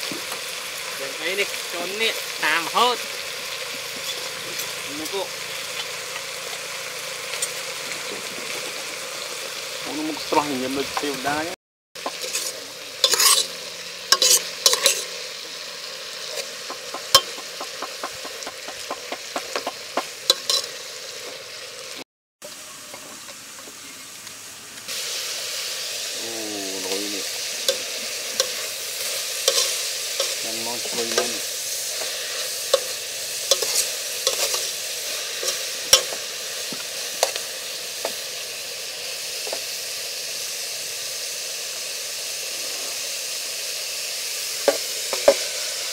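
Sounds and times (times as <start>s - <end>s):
food sizzling in a pan: 0.0s - 45.9s.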